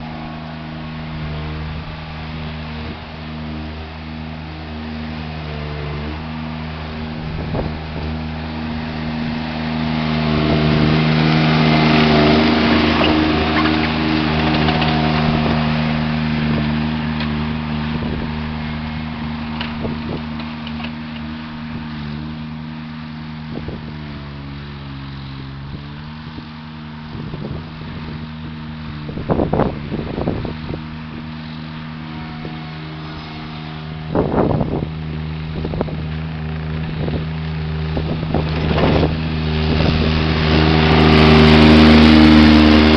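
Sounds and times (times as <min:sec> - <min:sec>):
skid steer engine running: 0:00.0 - 0:42.9
clunks: 0:11.9 - 0:22.3, 0:31.1 - 0:39.3.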